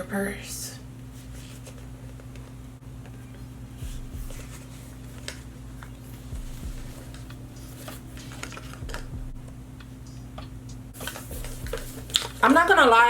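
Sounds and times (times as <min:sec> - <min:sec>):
low hum: 0:02.6 - 0:13.0.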